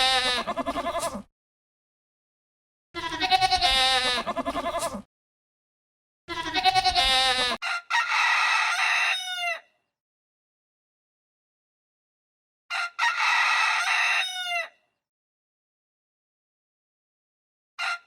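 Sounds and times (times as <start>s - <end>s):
wavering bleats: 0.0s - 1.3s, 3.0s - 5.1s, 6.3s - 7.6s
rooster crowing: 7.4s - 9.7s, 12.7s - 14.8s, 17.8s - 18.0s.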